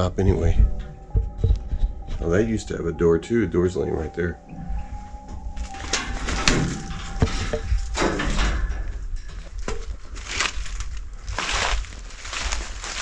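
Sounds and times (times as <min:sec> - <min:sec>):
footsteps crunching on leaves: 0:10.2 - 0:13.0.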